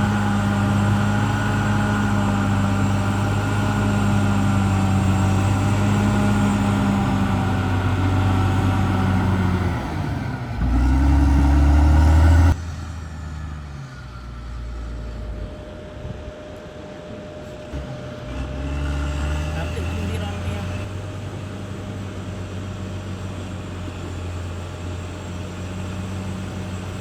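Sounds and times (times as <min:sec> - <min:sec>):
bulldozer diesel engine running: 0:00.0 - 0:27.0
high-pitched whine: 0:12.2 - 0:21.0.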